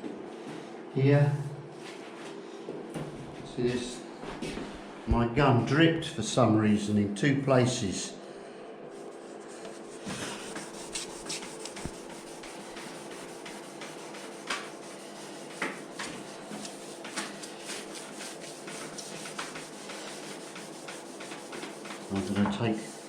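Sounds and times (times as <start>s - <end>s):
sandpaper rubbing on paint: 9.4s - 23.0s.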